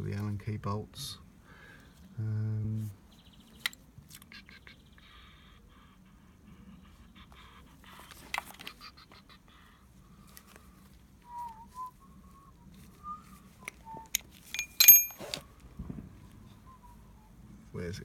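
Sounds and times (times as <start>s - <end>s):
person whistling softly: 10.6s - 14.3s, 16.4s - 17.4s
hand tools clicking and clinking: 14.1s - 15.4s.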